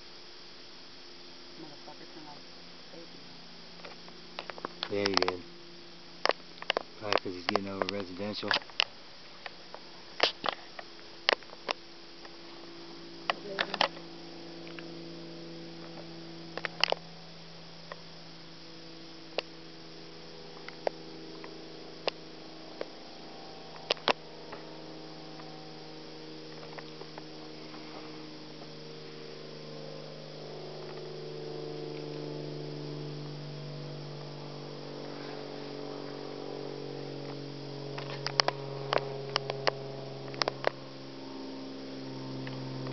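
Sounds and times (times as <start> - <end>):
distant aircraft engine drone: 0.0 - 42.9
sharp clicks: 6.2 - 9.6.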